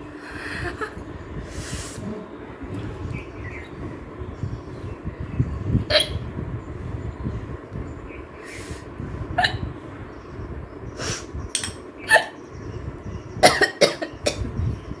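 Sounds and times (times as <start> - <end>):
woman hiccuping: 5.9 - 6.2, 9.4 - 9.6.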